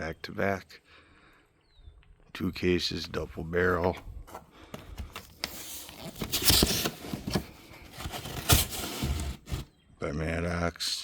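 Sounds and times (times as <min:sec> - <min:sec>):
rustling and scraping handling noise: 0:03.7 - 0:09.7.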